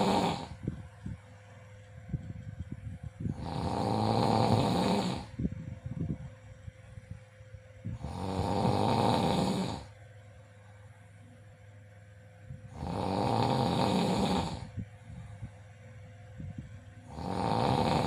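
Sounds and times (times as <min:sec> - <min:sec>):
person snoring: 0:00.0 - 0:00.6, 0:03.3 - 0:05.4, 0:07.9 - 0:09.9, 0:12.7 - 0:14.8, 0:17.1 - 0:18.0
quiet breathing: 0:00.0 - 0:00.6.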